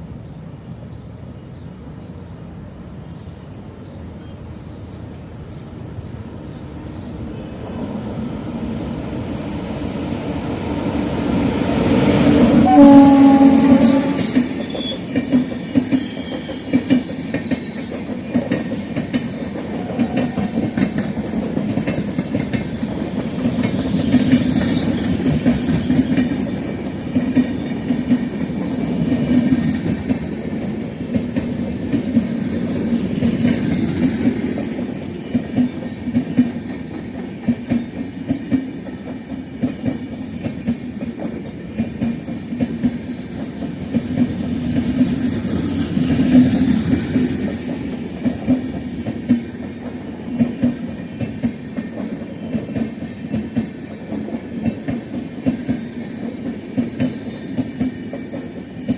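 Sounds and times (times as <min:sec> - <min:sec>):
train wheels clattering over rail joints: 0:13.3 - 0:58.9.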